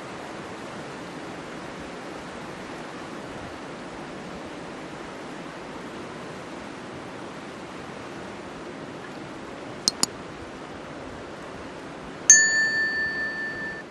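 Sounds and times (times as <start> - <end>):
loud bell-like ding: 9.9 - 10.1, 12.3 - 13.9
quick sharp clicks: 9.9 - 10.1.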